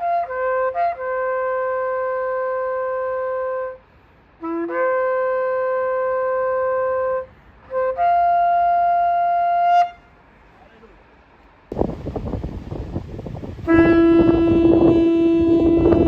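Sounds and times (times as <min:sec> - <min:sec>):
shofar blasts: 0:00.0 - 0:03.8, 0:04.4 - 0:10.2, 0:13.4 - 0:16.0.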